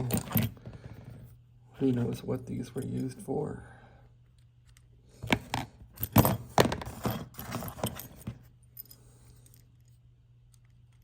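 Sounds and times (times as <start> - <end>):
metal hardware clinking: 0.0 - 0.6, 6.0 - 9.0.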